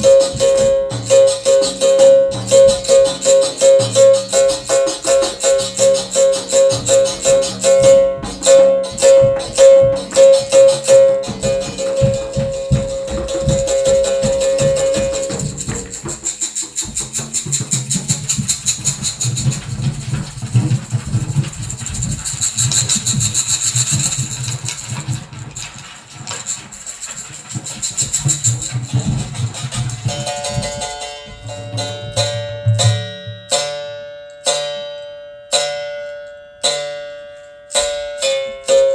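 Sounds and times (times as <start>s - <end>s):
ringing berimbau note: 0.0s - 16.0s, 30.1s - 38.9s
rattling shaker: 0.0s - 33.1s
live percussive music: 0.0s - 34.8s.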